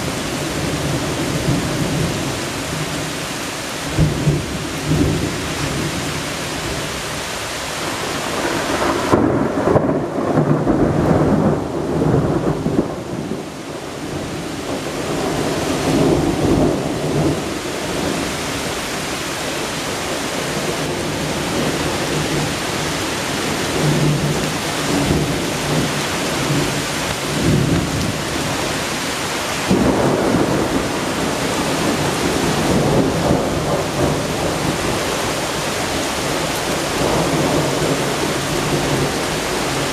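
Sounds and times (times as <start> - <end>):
heavy rain falling: 0.0 - 39.9
thunder rumbling: 8.1 - 39.9.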